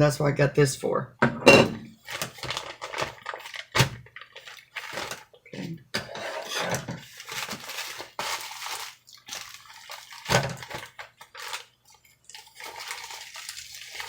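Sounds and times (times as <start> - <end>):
packing material rustling: 2.0 - 5.4, 6.3 - 14.0.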